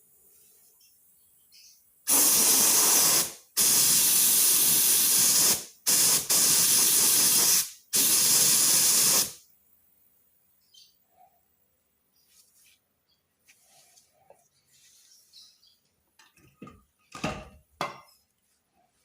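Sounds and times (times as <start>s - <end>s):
compressed air hissing: 2.1s - 9.4s.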